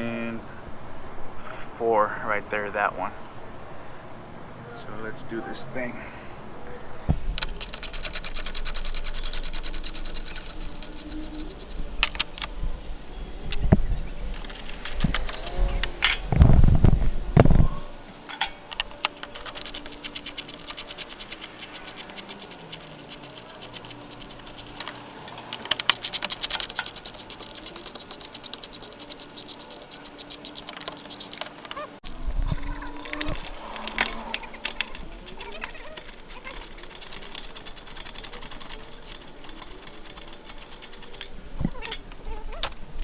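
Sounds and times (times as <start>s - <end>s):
ratchet wrench clicking: 7.4s - 12.5s, 18.3s - 31.8s, 33.0s - 42.8s.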